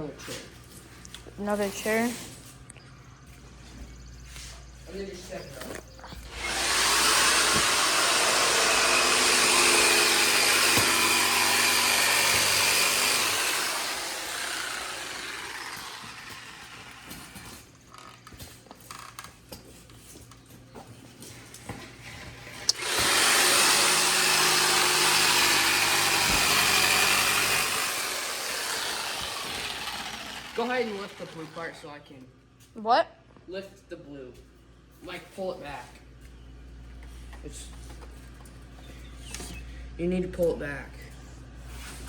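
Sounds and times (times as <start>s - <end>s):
power tool motor running: 6.2s - 18.2s, 22.1s - 32.0s.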